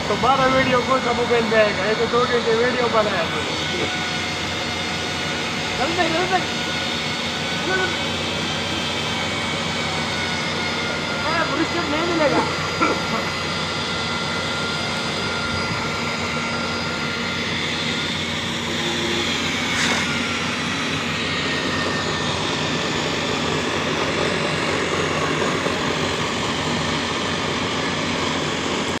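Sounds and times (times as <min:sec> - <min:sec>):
core cutting machine grinding: 0:00.0 - 0:29.0.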